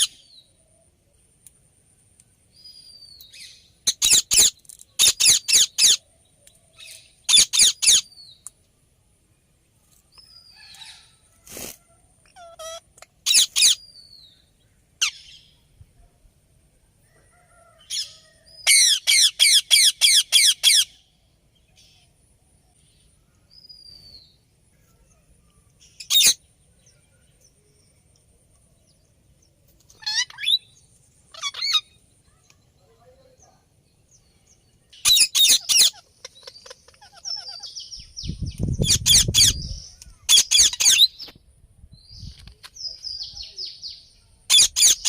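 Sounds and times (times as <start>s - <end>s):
parakeet calling loudly: 3.8s - 6.0s, 7.2s - 8.1s, 12.3s - 13.9s, 18.7s - 21.0s, 26.0s - 26.4s, 30.0s - 30.7s, 31.3s - 32.0s, 35.0s - 38.0s, 38.8s - 39.6s, 40.3s - 41.2s, 44.5s - 45.0s.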